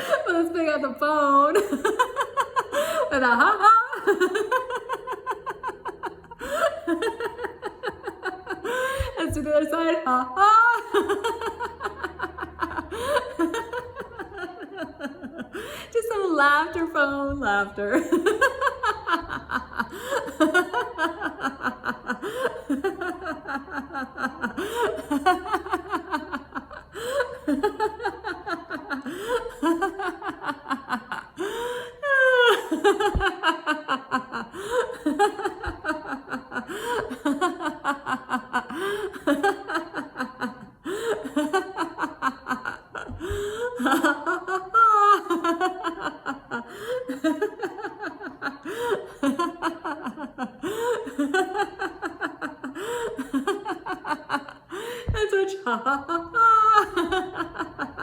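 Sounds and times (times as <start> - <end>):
woman laughing out loud: 1.6 - 16.2, 17.1 - 58.0
woman gasping: 15.5 - 16.0, 54.7 - 55.3.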